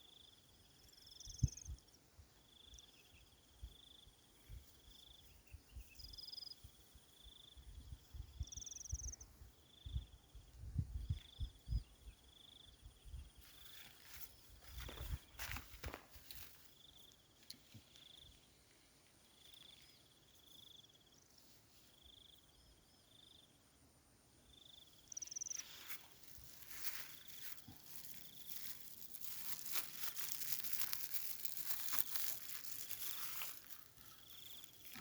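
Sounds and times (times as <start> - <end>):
insect chirping: 0.0 - 35.0
crackling rustling with ticks: 13.4 - 18.3, 25.1 - 35.0.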